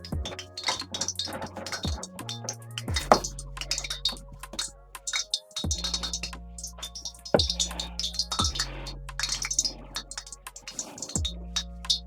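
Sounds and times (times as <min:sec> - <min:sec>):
deep kick drum and bass: 0:00.0 - 0:00.4, 0:01.9 - 0:02.2, 0:02.8 - 0:05.1, 0:05.7 - 0:10.2, 0:11.2 - 0:12.0
crisp high percussion ticks: 0:00.0 - 0:12.0
electronic music: 0:00.0 - 0:12.0.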